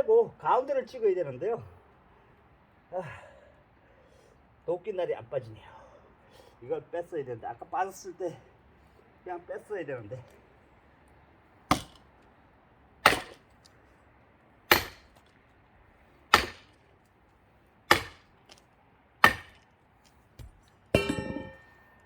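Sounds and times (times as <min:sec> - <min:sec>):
heavy blows on log: 0:11.7 - 0:12.0, 0:13.0 - 0:13.4, 0:14.7 - 0:15.3, 0:16.3 - 0:16.8, 0:17.9 - 0:18.6, 0:19.2 - 0:19.6
metallic ringing blow: 0:21.0 - 0:22.0.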